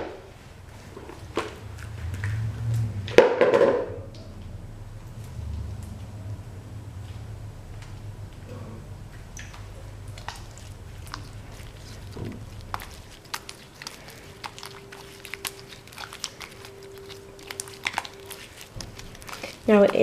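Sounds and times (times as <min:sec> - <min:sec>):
slime kneaded by hand: 0:09.2 - 0:20.0.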